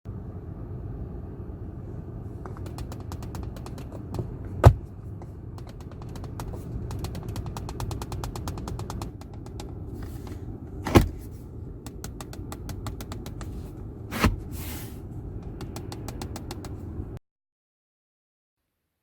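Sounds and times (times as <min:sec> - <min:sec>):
steady low rumble: 0:00.1 - 0:17.2
armrest knocking and rattling: 0:02.5 - 0:14.5.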